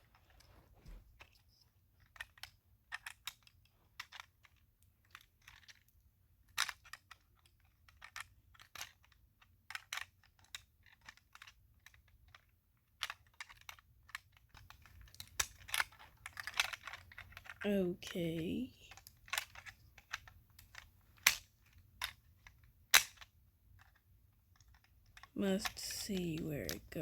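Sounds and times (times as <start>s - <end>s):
toy car parts clicking: 1.2s - 17.6s, 18.9s - 26.1s.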